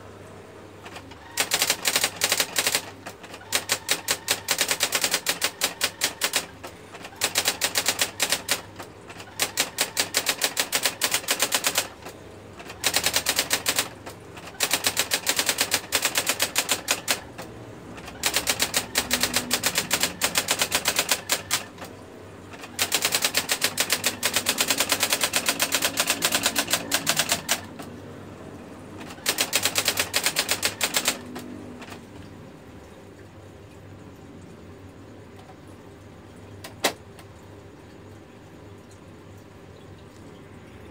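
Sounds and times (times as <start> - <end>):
electronic typewriter printing: 0.8 - 28.2, 28.8 - 32.3, 36.6 - 37.0.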